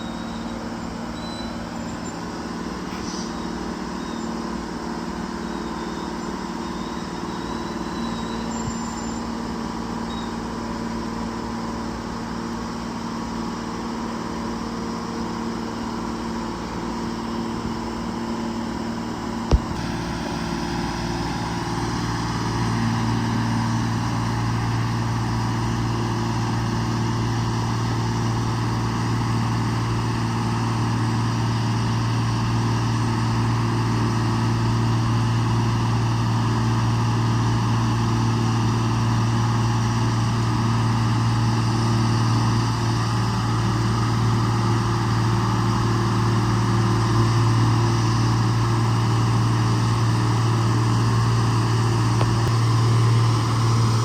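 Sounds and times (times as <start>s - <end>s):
excavator engine running: 15.5s - 33.8s, 41.9s - 54.0s.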